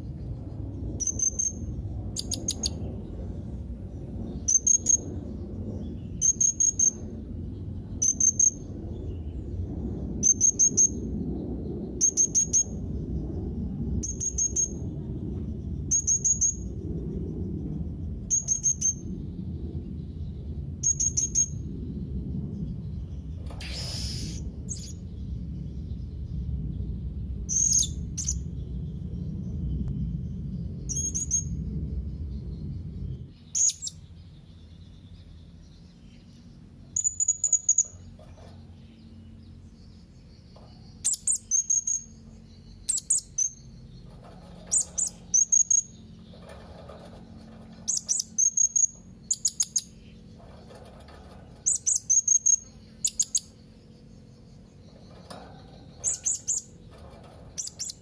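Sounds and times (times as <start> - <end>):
low rumble: 0.0 - 58.0.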